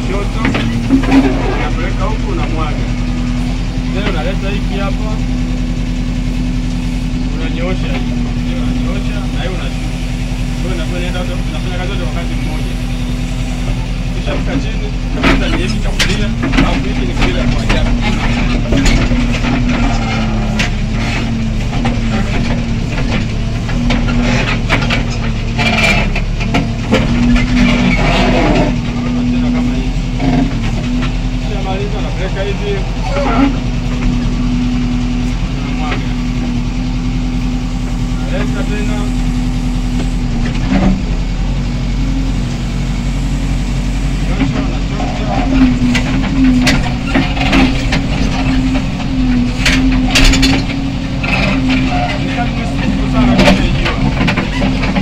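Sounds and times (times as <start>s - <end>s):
diesel engine running: 0.0s - 55.0s
machine knocks and rattles: 14.3s - 29.6s, 44.1s - 55.0s.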